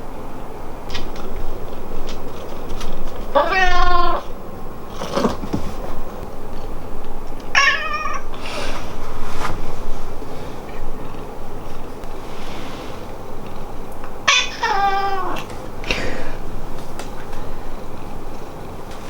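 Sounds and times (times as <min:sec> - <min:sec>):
cat meowing: 0:03.3 - 0:04.3, 0:07.5 - 0:08.4, 0:14.2 - 0:15.5.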